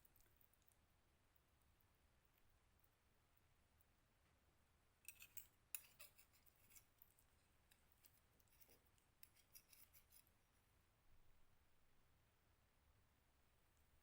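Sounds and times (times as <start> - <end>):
fork scraping glass dish: 5.1 - 6.9, 8.0 - 10.3.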